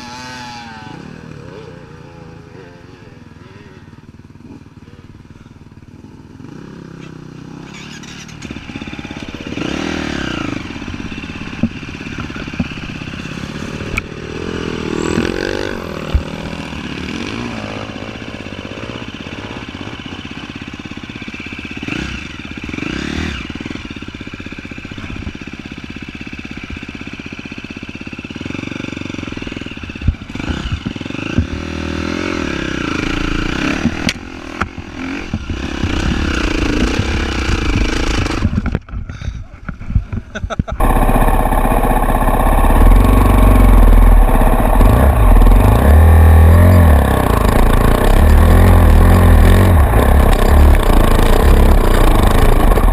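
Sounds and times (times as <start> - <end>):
off-road vehicle engine revving: 6.4 - 20.2, 21.8 - 23.8, 30.0 - 38.6, 40.8 - 52.9.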